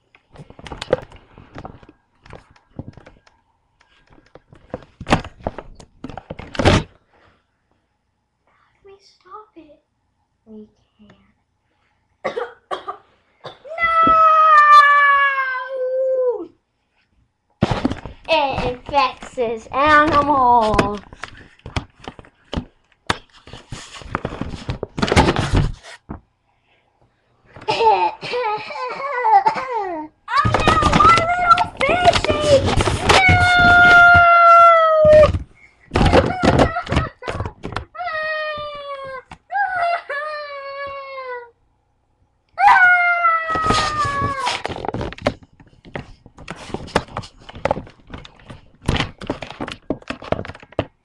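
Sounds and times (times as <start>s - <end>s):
rustling handling noise: 16.8s - 26.3s, 30.3s - 34.4s, 43.6s - 51.0s
knocks and thuds: 17.6s - 21.0s, 30.3s - 34.4s, 35.0s - 37.9s
rustling: 30.3s - 34.4s.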